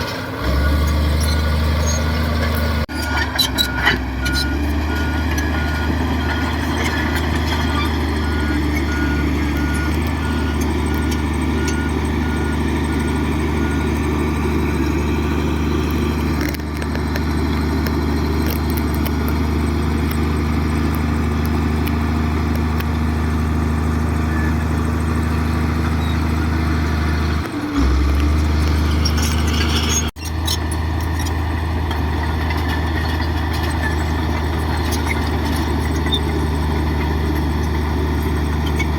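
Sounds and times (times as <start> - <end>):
heavy diesel engine running: 0.0 - 38.9
reversing alarm beeping: 3.0 - 14.2.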